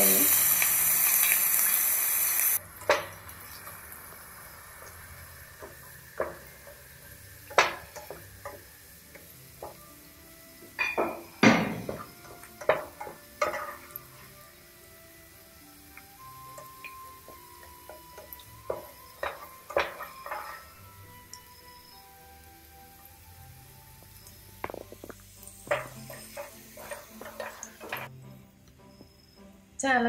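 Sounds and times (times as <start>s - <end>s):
ginger sizzling in hot oil: 0.0s - 29.6s
faint background music: 2.6s - 30.0s
utensil clinking against pan: 10.8s - 13.9s, 17.9s - 20.8s, 25.7s - 28.1s.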